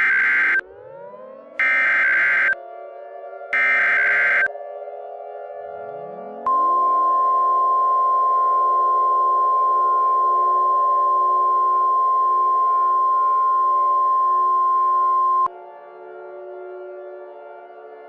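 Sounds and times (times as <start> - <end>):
loud steady warning alarm tone: 0.0 - 0.6, 1.6 - 2.6, 3.6 - 4.5, 6.5 - 15.5.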